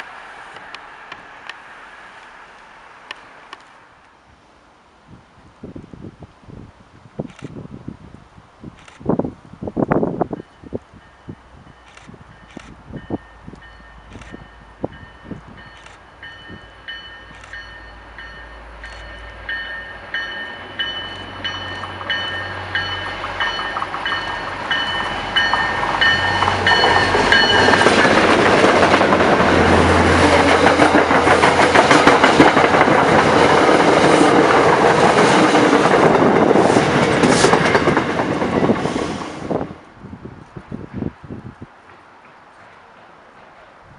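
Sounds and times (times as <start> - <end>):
locomotive bell ringing: 10.4 - 28.1
train wheels clattering: 11.7 - 39.4.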